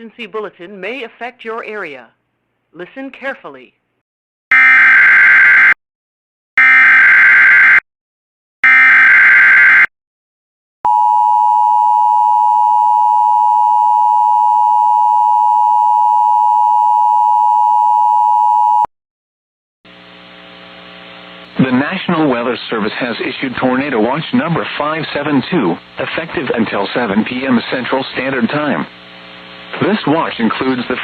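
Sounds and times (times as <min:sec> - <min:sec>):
steady attention signal tone: 0:10.9 - 0:18.9.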